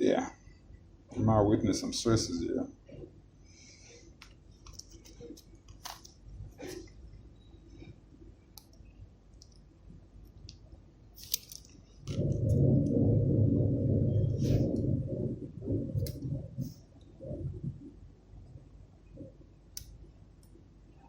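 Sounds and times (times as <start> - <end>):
loud steady hum: 9.9 - 21.0
small metal tools clicking: 11.2 - 11.8.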